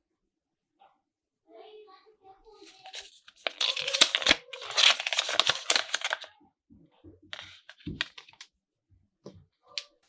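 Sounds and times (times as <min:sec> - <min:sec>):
thin material crinkling and tearing: 0:02.6 - 0:06.3, 0:07.3 - 0:08.4.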